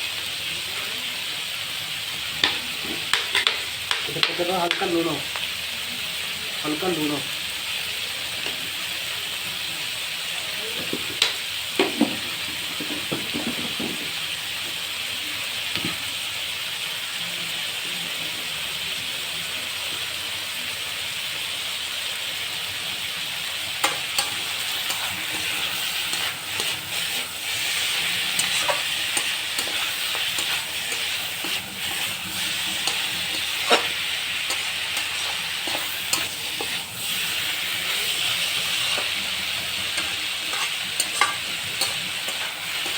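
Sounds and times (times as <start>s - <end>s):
curry sizzling in a pan: 0.0s - 42.9s
spatula stirring and scraping: 23.7s - 42.9s
spatula knocking against pan: 39.9s - 42.9s.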